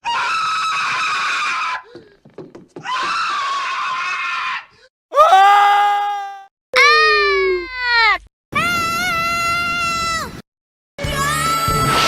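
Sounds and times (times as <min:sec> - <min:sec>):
cartoon character screaming: 0:05.2 - 0:10.3.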